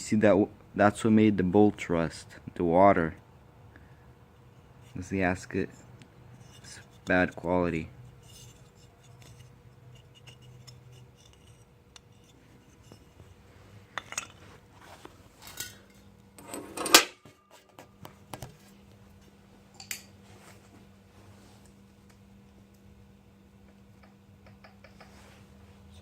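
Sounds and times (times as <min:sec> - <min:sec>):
metal parts and tools clinking: 0:14.0 - 0:14.4, 0:15.4 - 0:17.2.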